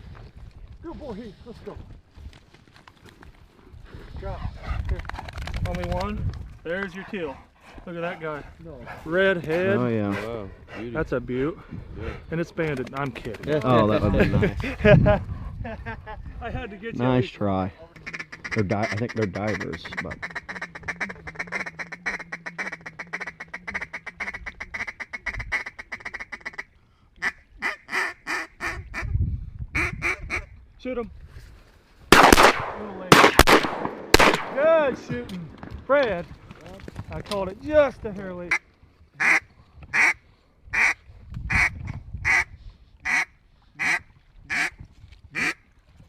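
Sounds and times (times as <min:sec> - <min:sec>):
duck quacking: 0:18.0 - 0:29.0, 0:39.2 - 0:40.2, 0:41.6 - 0:44.7.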